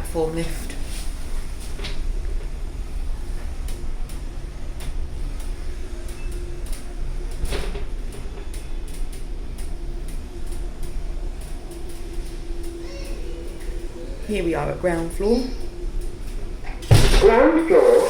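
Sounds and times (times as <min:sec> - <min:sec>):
platform lift drive droning: 0:00.0 - 0:18.0
light clicks and ticks: 0:03.4 - 0:13.8.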